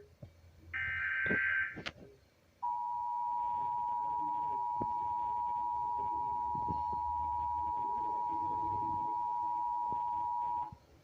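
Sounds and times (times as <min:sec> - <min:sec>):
two-tone attention signal: 0:02.6 - 0:10.8.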